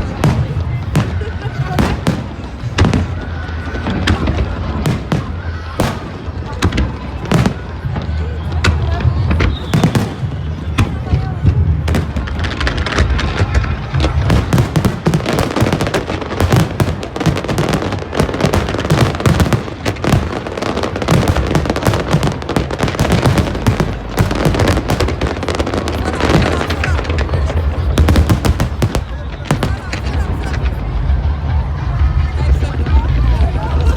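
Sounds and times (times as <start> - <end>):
fireworks bangs and crackles: 0.0 - 33.9.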